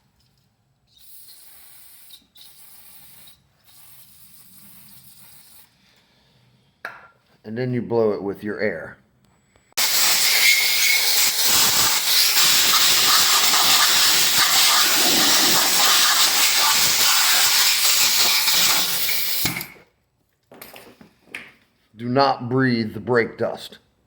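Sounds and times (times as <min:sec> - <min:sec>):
compressed air gun hissing: 0:09.8 - 0:19.7.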